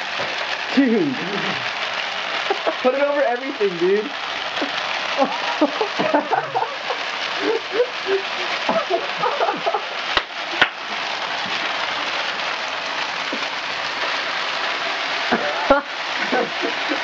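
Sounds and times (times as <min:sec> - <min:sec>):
snow machine hissing rush: 0:00.0 - 0:17.0
faint voices: 0:15.3 - 0:16.8.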